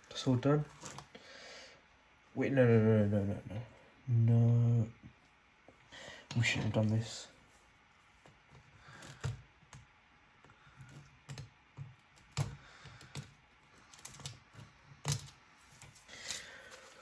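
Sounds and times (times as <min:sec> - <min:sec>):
small parts and tools clicking: 0:10.4 - 0:17.0.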